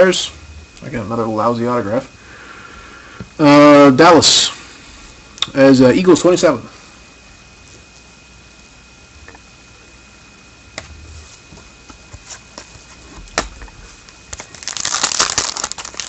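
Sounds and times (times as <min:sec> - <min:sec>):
foil wrapper crinkling: 0:13.9 - 0:16.0.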